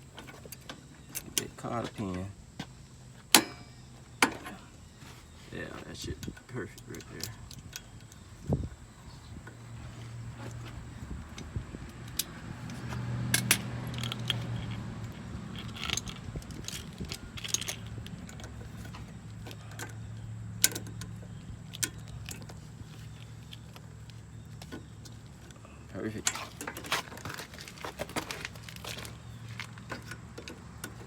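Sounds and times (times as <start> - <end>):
metallic clicks of hand tools: 13.3 - 19.0.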